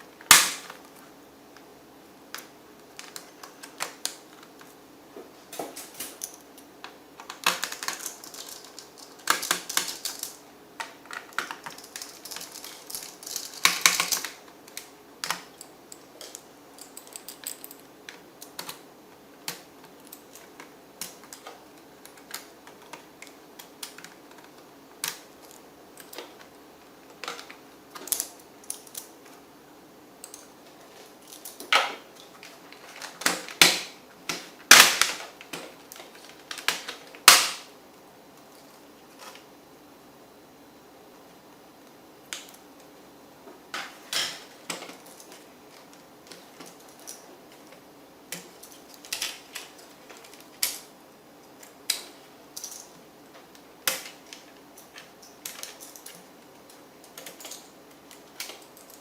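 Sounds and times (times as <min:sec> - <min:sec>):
laptop parts clicking and tapping: 0:02.3 - 0:04.8, 0:05.5 - 0:18.8, 0:19.4 - 0:26.5, 0:43.8 - 0:50.9, 0:51.6 - 0:59.0.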